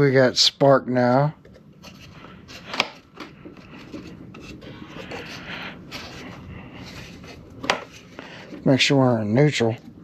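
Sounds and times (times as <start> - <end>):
hands rubbing and scraping: 1.8 - 8.8.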